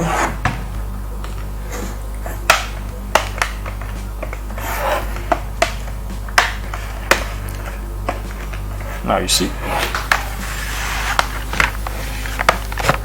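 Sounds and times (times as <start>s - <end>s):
plastic clips snapping: 2.4s - 4.5s.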